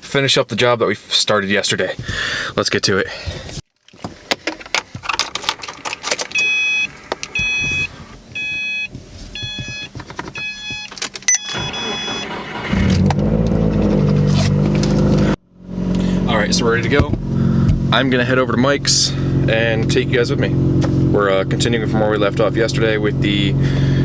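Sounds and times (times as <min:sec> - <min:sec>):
car engine starting and running: 0:04.4 - 0:24.0
car warning chime: 0:06.4 - 0:12.6.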